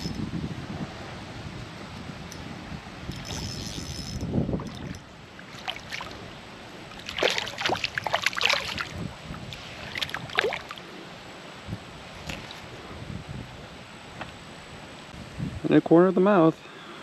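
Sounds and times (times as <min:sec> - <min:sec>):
water splashing and sloshing: 0:04.5 - 0:11.2, 0:12.0 - 0:12.8.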